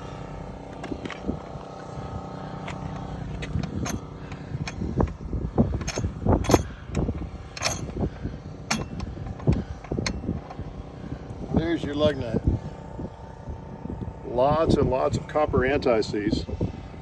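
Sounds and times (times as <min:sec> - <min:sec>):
steady hum: 0:00.0 - 0:17.0
metallic clinks of wheel nut: 0:02.7 - 0:10.7.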